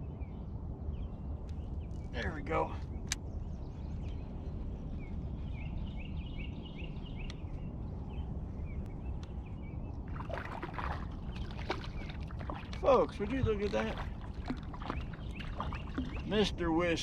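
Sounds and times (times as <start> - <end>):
rumble of water and wind: 0.0 - 17.0
splashy water rush: 10.1 - 16.5.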